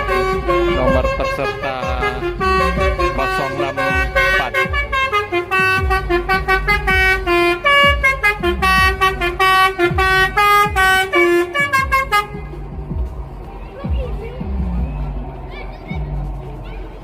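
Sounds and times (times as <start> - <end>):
air horns playing a melody: 0.0 - 12.6
deep thudding beat: 0.0 - 16.4.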